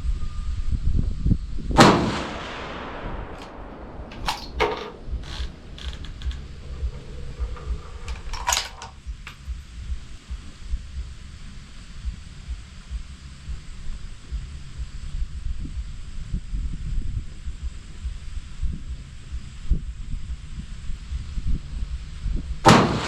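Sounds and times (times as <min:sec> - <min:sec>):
wind rumbling on microphone: 0:00.0 - 0:23.0
rifle shot: 0:01.8 - 0:09.4, 0:22.6 - 0:23.0
sharp clicks: 0:01.8 - 0:09.6.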